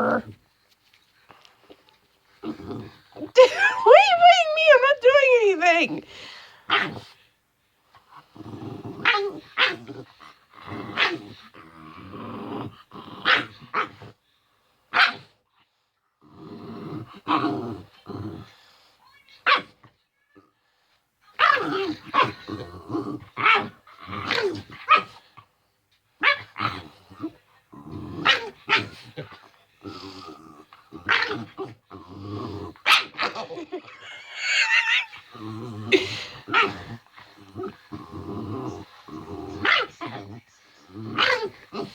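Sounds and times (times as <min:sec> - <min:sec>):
dog growling: 0:00.0 - 0:00.4, 0:02.4 - 0:03.7, 0:08.1 - 0:14.1, 0:21.5 - 0:24.8, 0:26.6 - 0:41.9
dog barking: 0:32.9 - 0:33.1.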